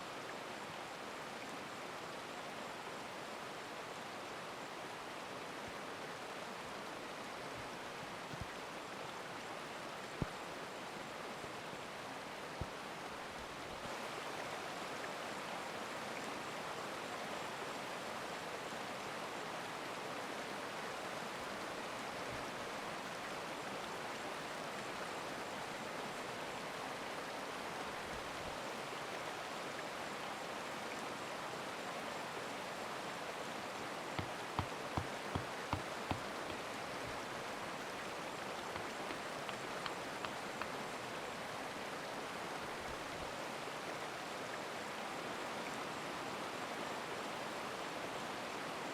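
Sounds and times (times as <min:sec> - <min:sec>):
stream rushing: 0:00.0 - 0:48.9
rain falling: 0:32.7 - 0:43.2
light knocks: 0:34.2 - 0:37.2.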